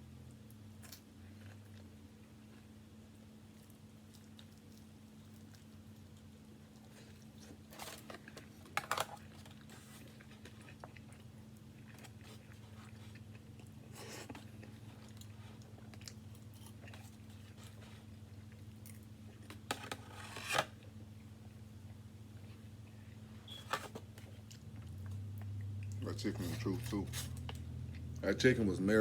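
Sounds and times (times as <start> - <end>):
steady low hum: 0.0 - 29.0
chewing and biting food: 0.8 - 19.7.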